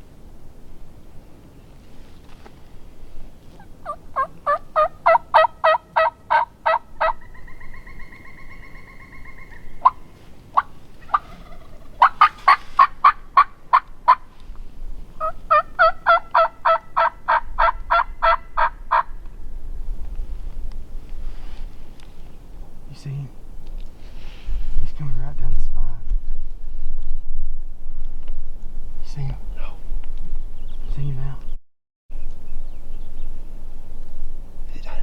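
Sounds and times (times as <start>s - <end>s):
turkey yelping: 3.5s - 14.2s, 15.2s - 19.1s.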